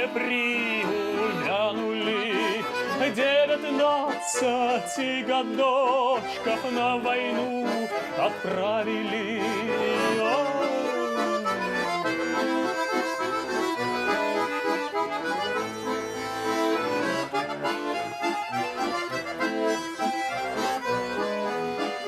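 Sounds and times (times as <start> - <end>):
person singing: 0.0 - 13.2
accordion playing: 0.0 - 22.0.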